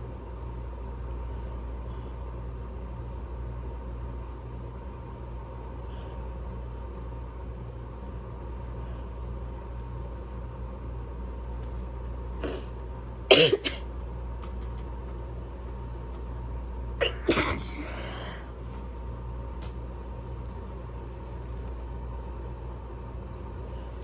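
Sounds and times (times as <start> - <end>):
person sneezing: 12.4 - 13.9, 17.0 - 18.6.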